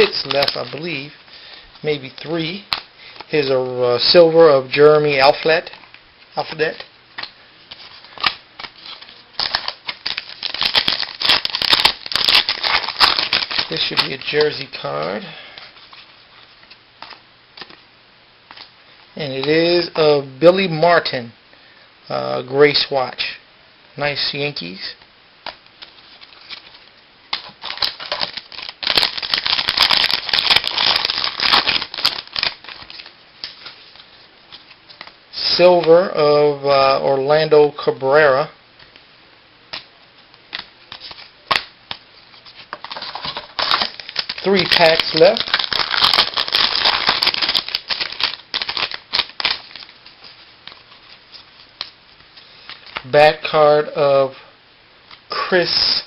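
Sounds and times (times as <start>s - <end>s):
card pack rustling and crinkling: 0.0s - 3.4s, 5.1s - 17.8s, 25.5s - 36.1s, 40.5s - 53.1s.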